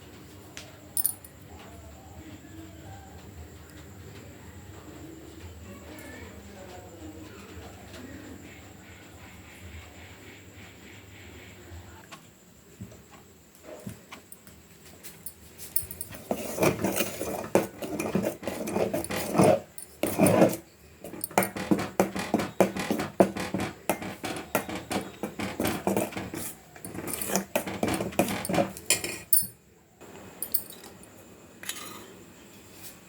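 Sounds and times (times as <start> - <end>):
utensil scraping a cooking pot: 15.9 - 29.3.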